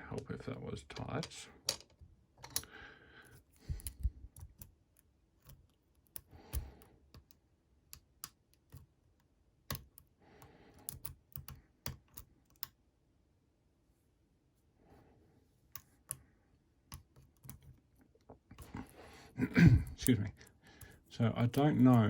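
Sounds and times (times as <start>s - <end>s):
lock pick clicking on pins: 9.6s - 10.1s, 10.7s - 12.8s.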